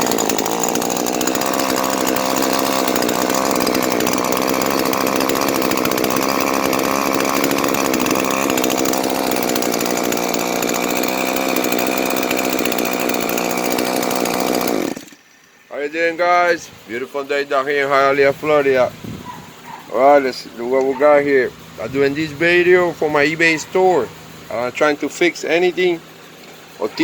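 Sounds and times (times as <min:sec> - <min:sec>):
chainsaw running: 0:00.0 - 0:27.0.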